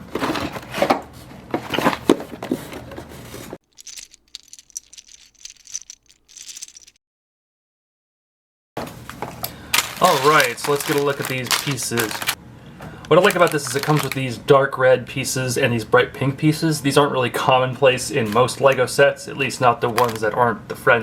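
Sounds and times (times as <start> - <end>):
plastic pieces rattling in bags: 3.7 - 7.0.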